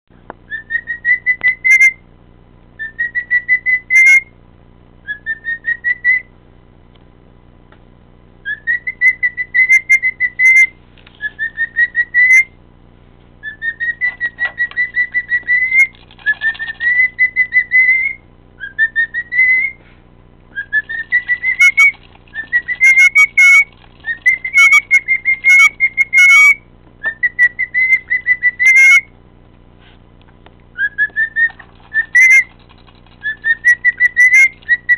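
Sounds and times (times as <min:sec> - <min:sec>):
cockatiel whistling: 0:00.5 - 0:02.0, 0:02.8 - 0:04.3, 0:05.1 - 0:06.3, 0:08.4 - 0:12.6, 0:13.4 - 0:19.8, 0:20.5 - 0:29.1, 0:30.8 - 0:34.9
sharp clicks: 0:15.8 - 0:16.9, 0:31.4 - 0:34.8.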